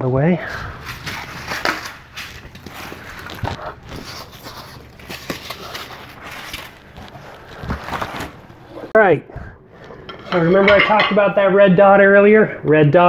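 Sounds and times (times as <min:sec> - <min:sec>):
packing trash rustling: 0:00.5 - 0:08.9.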